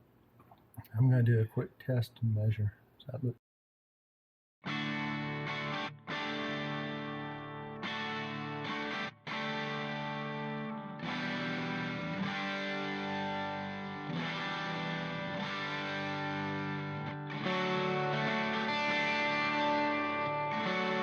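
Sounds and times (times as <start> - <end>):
background music sustained chords: 4.7 - 21.0.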